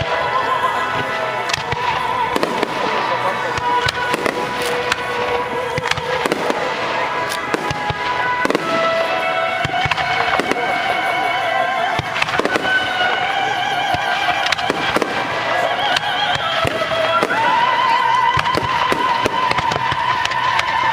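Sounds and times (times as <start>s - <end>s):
background music with held notes: 0.0s - 20.9s
fireworks bursting and crackling: 0.0s - 20.9s.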